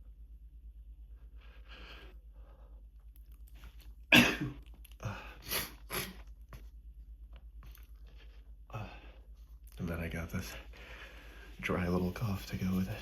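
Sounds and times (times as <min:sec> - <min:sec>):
person coughing: 0:04.1 - 0:04.6.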